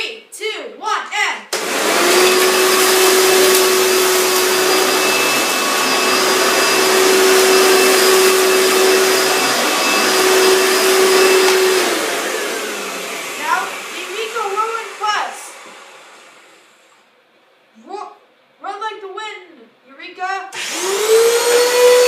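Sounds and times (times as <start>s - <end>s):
vacuum cleaner running: 1.5s - 17.0s, 20.5s - 22.0s.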